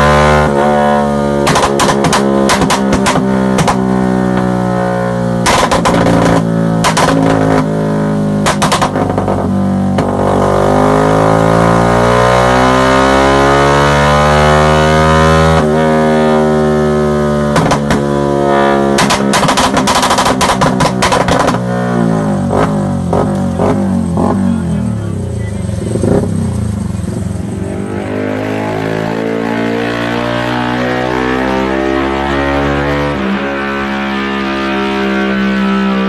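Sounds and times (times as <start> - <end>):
motorcycle engine revving: 0.0 - 36.0
exhaust pops and crackles: 1.4 - 4.6, 5.4 - 7.7, 8.4 - 10.2, 17.5 - 18.2, 18.9 - 21.7.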